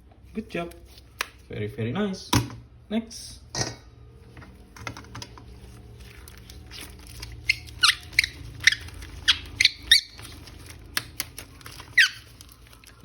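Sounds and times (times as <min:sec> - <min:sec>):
gliding plastic squeaks: 0:06.7 - 0:10.7, 0:11.6 - 0:12.6.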